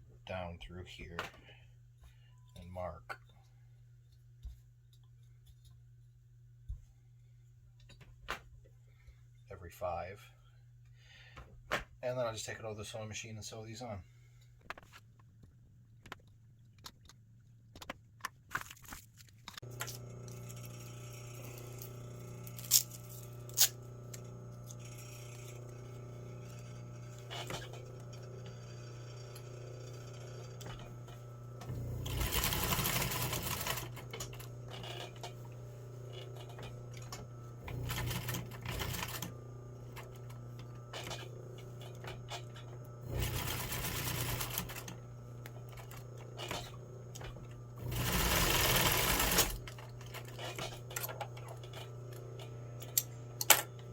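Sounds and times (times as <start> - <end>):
sewing machine motor hum: 19.6 - 53.9
sewing machine stitching: 19.6 - 53.9.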